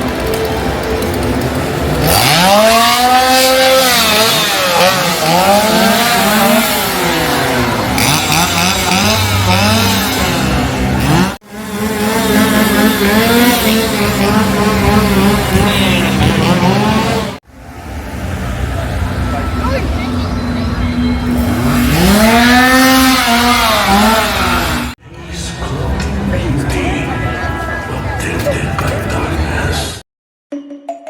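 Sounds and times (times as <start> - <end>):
chainsaws revving: 0.0 - 17.4, 21.2 - 25.0.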